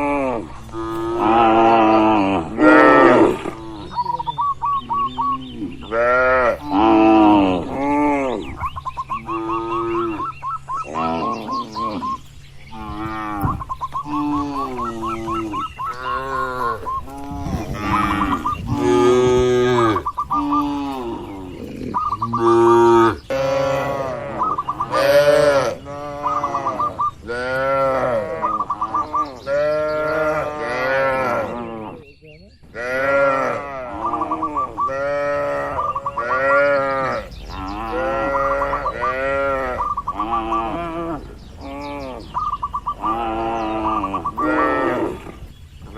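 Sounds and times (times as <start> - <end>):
cattle mooing: 0.0 - 4.2, 4.9 - 8.5, 9.2 - 32.0, 32.8 - 45.5
short chirping calls: 3.6 - 6.1, 8.4 - 17.2, 19.6 - 27.7, 33.9 - 45.9.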